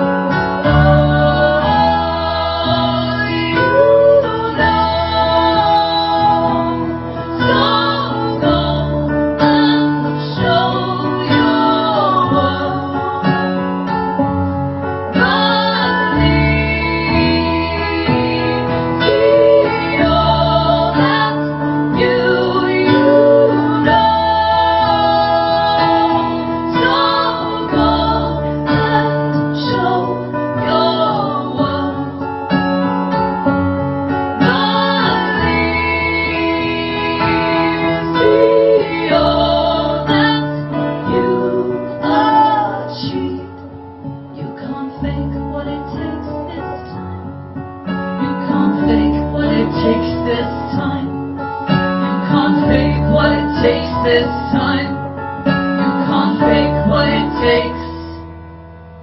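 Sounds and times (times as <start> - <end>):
woman singing: 0.0 - 13.9, 15.1 - 32.9, 34.3 - 47.2, 47.9 - 58.3.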